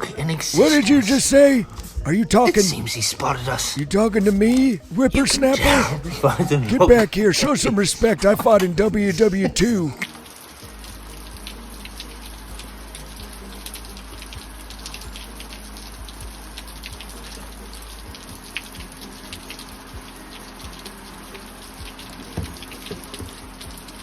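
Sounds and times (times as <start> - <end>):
patter of falling water: 0.1 - 24.0.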